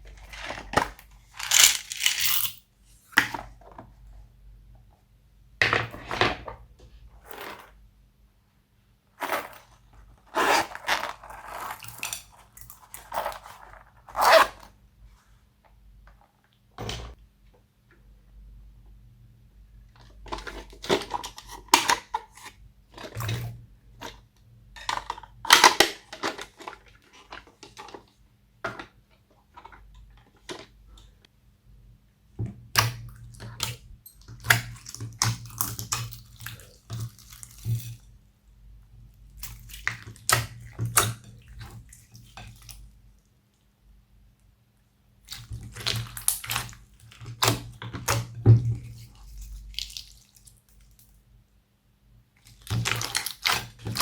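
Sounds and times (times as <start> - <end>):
slime squelching: 45.3 - 48.2, 48.9 - 50.6.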